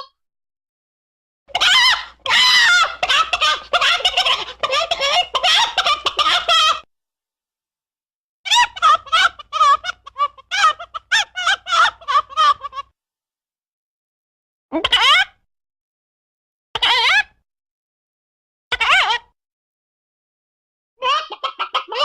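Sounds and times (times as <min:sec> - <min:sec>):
chicken clucking and cackling: 0:01.5 - 0:06.8, 0:21.0 - 0:22.0.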